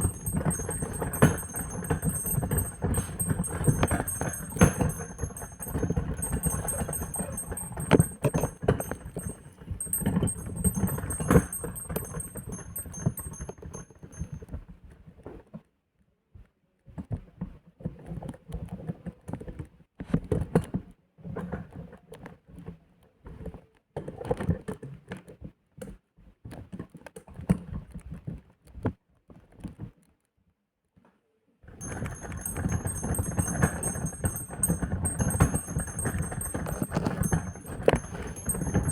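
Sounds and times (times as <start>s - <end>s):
small metal bells tinkling: 0.0s - 14.4s, 31.8s - 38.9s
clicks and knocks: 31.8s - 38.9s.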